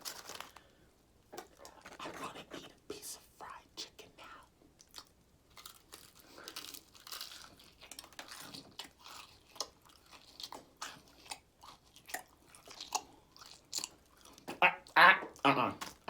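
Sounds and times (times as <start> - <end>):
person chewing crispy chicken: 4.2 - 16.0.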